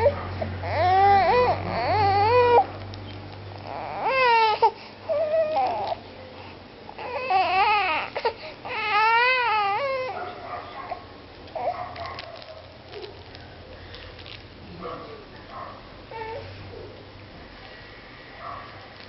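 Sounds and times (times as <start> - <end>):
baby crying: 0.0 - 2.8, 3.6 - 6.0, 7.0 - 10.2, 16.1 - 16.5.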